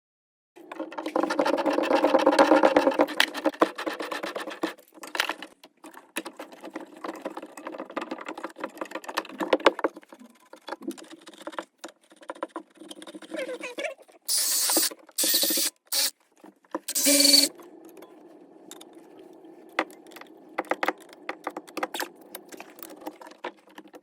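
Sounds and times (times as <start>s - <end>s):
hydraulic press tool whirring: 14.3s - 16.1s, 16.9s - 17.5s.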